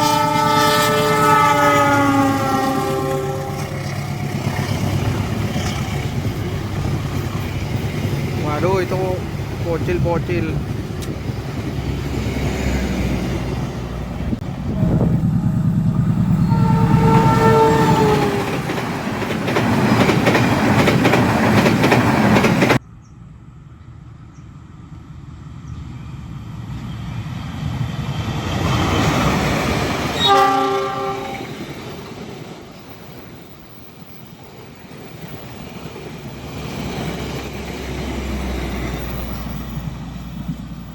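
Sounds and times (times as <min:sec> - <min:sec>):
train horn blast: 0:00.0 - 0:03.9, 0:14.6 - 0:18.6, 0:30.2 - 0:31.6
train wheels rumbling: 0:00.0 - 0:22.8, 0:24.9 - 0:40.9.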